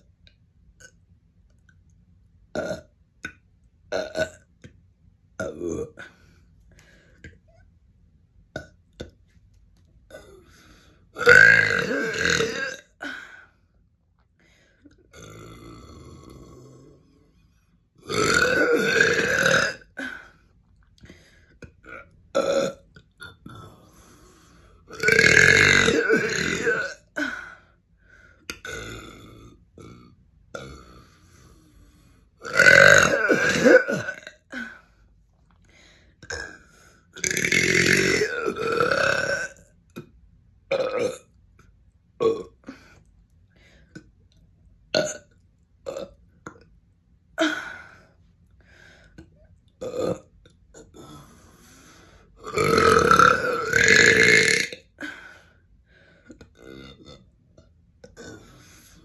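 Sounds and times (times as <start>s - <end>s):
person belching: 5.4s - 6.2s, 11.2s - 13.0s, 15.1s - 17.0s, 18.0s - 20.2s, 21.8s - 23.8s, 24.9s - 27.4s, 28.5s - 30.0s, 32.4s - 34.7s, 37.2s - 39.6s, 40.7s - 41.2s, 42.2s - 42.6s, 45.0s - 45.2s, 49.8s - 51.2s, 52.4s - 54.9s.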